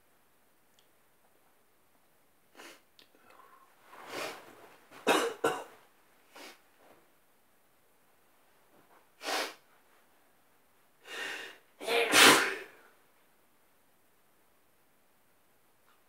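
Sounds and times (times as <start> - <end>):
person sneezing: 11.8 - 12.8.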